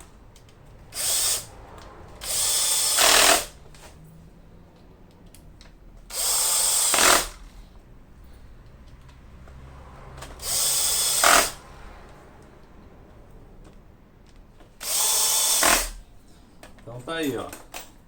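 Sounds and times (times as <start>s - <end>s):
power drill driving screws: 0.9s - 1.5s, 2.2s - 3.6s, 6.1s - 7.6s, 10.3s - 11.7s, 14.8s - 16.1s.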